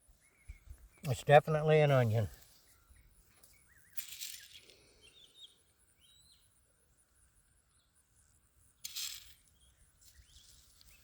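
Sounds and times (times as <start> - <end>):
bird chirping: 0.0 - 6.6.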